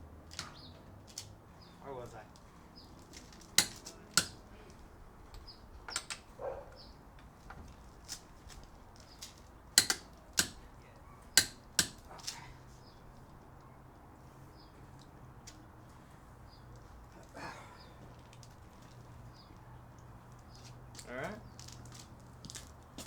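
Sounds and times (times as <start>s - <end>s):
torque wrench clicks: 9.8s - 10.6s.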